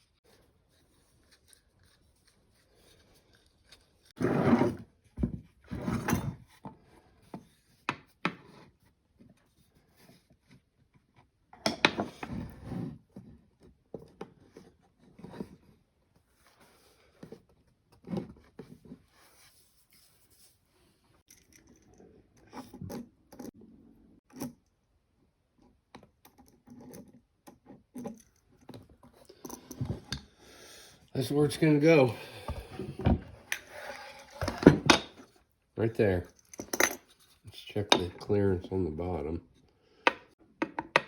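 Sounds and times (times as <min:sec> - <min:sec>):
wood scraping and knocking on wood: 0:04.2 - 0:06.8, 0:32.4 - 0:35.4.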